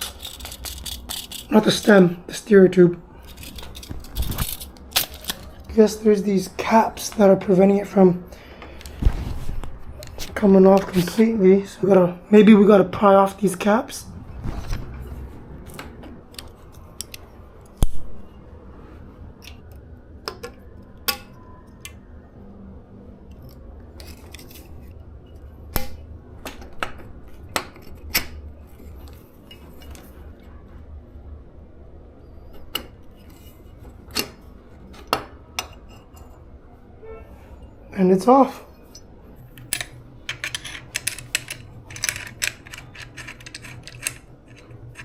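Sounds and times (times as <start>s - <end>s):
hand tools clicking on metal: 0.0s - 1.9s, 39.6s - 45.0s.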